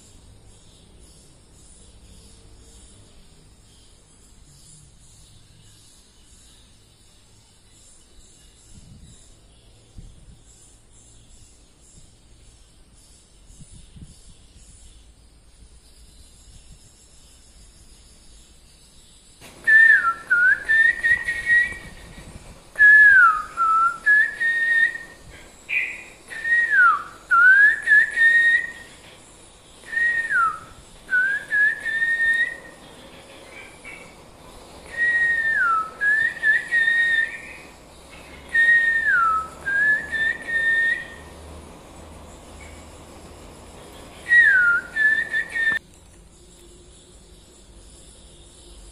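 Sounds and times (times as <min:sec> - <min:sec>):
recorded bird call whistling: 0:19.4 - 0:41.5, 0:44.1 - 0:45.8.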